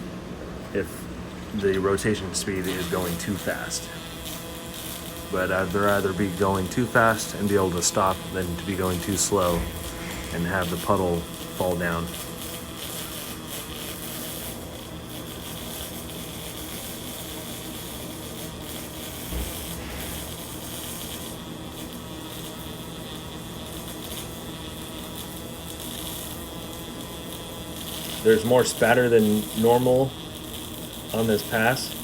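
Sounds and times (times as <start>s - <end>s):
welding arc buzzing: 0.6s - 32.0s
welding spatter: 1.6s - 32.0s
short low thump: 9.5s - 10.8s, 19.3s - 20.4s.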